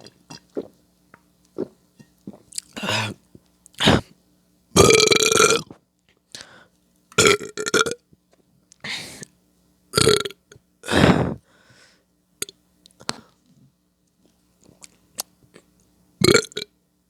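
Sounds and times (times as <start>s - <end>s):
person burping: 4.8s - 5.7s, 16.2s - 16.6s.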